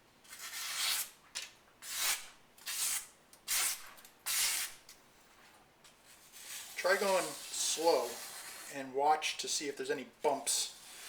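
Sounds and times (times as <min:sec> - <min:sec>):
knife slicing paper: 0:00.3 - 0:01.2, 0:01.8 - 0:04.8.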